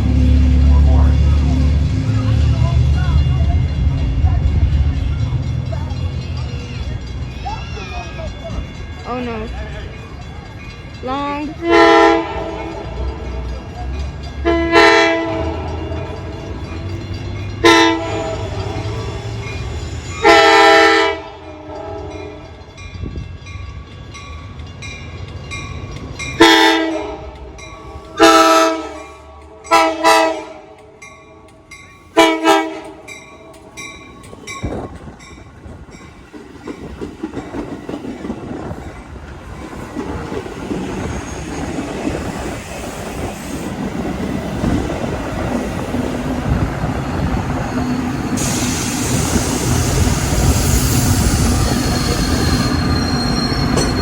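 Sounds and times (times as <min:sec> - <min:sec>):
train rumble: 0:00.0 - 0:54.0
locomotive horn blasts: 0:11.6 - 0:13.0, 0:14.4 - 0:16.1, 0:17.6 - 0:18.8, 0:20.2 - 0:22.5, 0:26.4 - 0:27.4, 0:28.2 - 0:30.8, 0:32.2 - 0:33.1
wheel squeal: 0:46.8 - 0:54.0.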